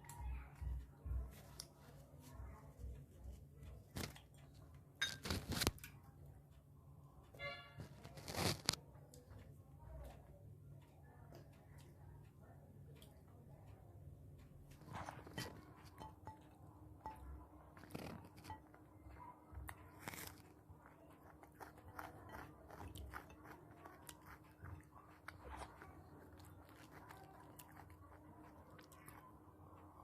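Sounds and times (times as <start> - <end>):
person chewing food: 14.7 - 16.5, 17.2 - 18.9, 19.5 - 30.0.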